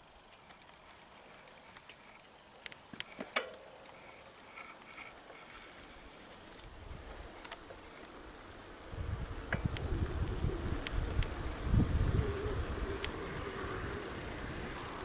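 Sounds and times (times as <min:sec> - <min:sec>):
wind rumbling on microphone: 0:06.6 - 0:15.0.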